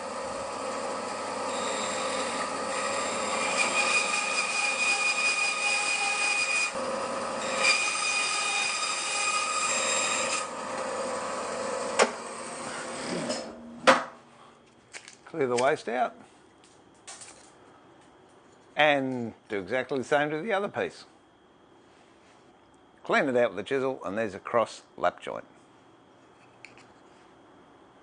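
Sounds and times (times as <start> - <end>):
bandsaw cutting timber: 0.0 - 13.6.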